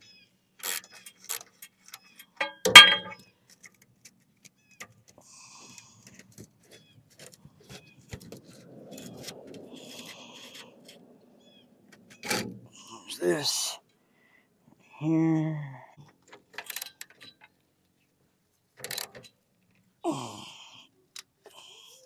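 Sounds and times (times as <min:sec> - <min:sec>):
loud ringing clank: 0:02.4 - 0:03.2
metal tools clinking: 0:02.4 - 0:03.2.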